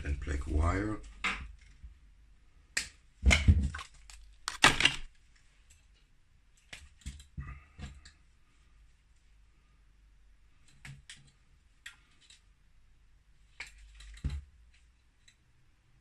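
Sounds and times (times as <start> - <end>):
wire rustling and clicking: 2.8 - 8.2, 10.6 - 12.6, 13.5 - 15.6.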